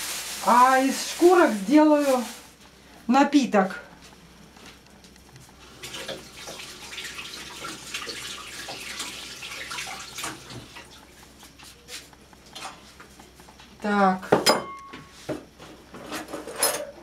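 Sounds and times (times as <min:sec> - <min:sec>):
water running from a tap: 0:05.7 - 0:11.9.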